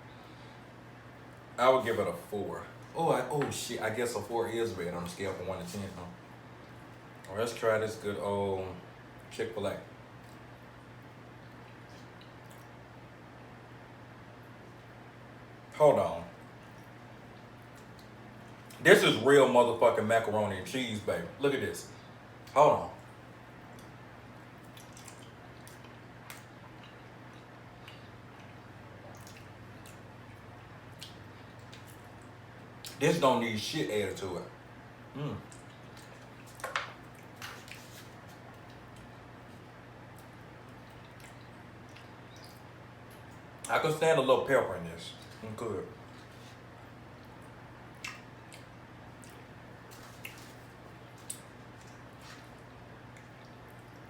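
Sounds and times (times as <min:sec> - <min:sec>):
steady low hum: 0:00.0 - 0:54.0
person chewing food: 0:22.4 - 0:33.0, 0:35.4 - 0:43.5, 0:46.0 - 0:54.0.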